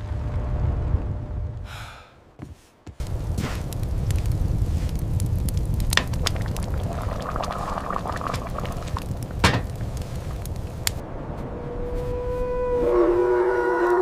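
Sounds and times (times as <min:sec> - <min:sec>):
low wind rumble: 0:00.0 - 0:14.0
sharp cracks and clicks: 0:03.0 - 0:11.0.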